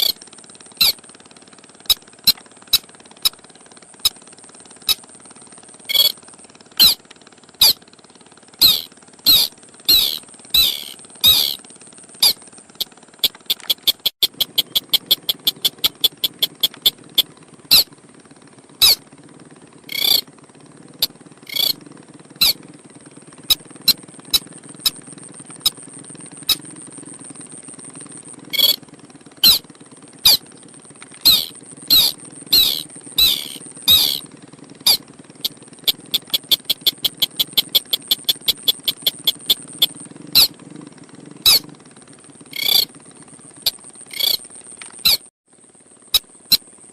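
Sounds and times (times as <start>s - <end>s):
rapid clicking bird notes: 0.0s - 1.1s, 1.8s - 3.4s, 4.0s - 5.1s, 5.8s - 7.8s, 8.6s - 17.9s, 18.8s - 19.0s, 19.9s - 20.3s, 21.0s - 21.8s, 22.4s - 22.6s, 23.4s - 28.8s, 29.4s - 29.6s, 30.2s - 34.2s, 34.8s - 40.6s, 41.4s - 41.6s, 42.5s - 42.9s, 43.6s - 45.3s
low hum: 4.8s - 6.2s, 8.6s - 17.9s, 19.8s - 20.3s, 21.0s - 22.7s, 23.3s - 41.8s
high-pitched whine: 6.8s - 7.0s, 8.6s - 11.6s, 19.9s - 20.2s, 21.5s - 21.8s, 31.2s - 34.2s
crake call notes: 13.2s - 17.8s, 35.9s - 40.5s.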